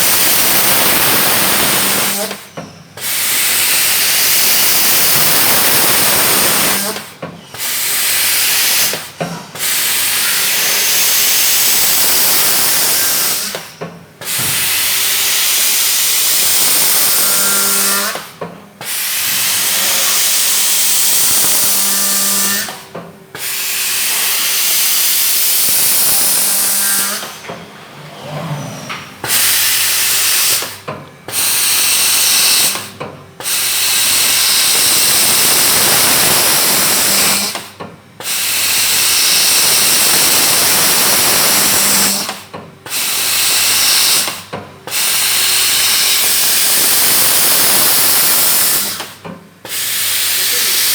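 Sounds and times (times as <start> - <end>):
machine hissing rush: 0.0 - 2.3, 3.0 - 6.9, 29.2 - 30.8, 33.5 - 37.4, 38.4 - 42.2, 45.0 - 49.0.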